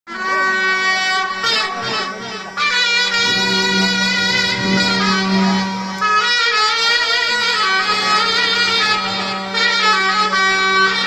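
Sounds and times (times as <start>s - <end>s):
reedy wind instrument melody: 0.1s - 11.0s
low drone: 1.2s - 11.0s.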